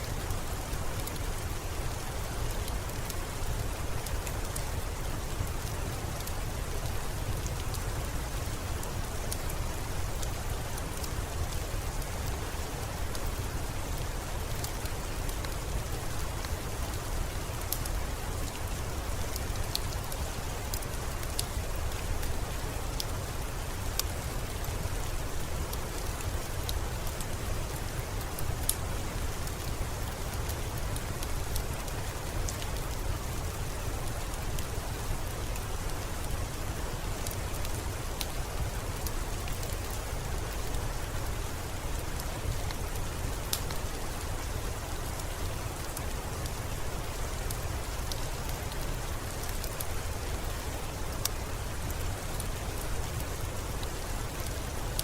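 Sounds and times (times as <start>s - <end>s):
steady rain: 0.0s - 55.0s
wood fire crackling: 0.0s - 55.0s.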